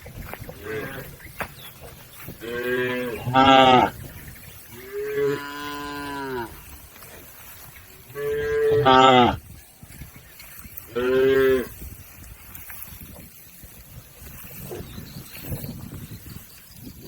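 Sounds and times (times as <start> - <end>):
cattle mooing: 0.5 - 1.2, 2.4 - 4.0, 4.7 - 6.8, 8.1 - 9.4, 10.9 - 11.8.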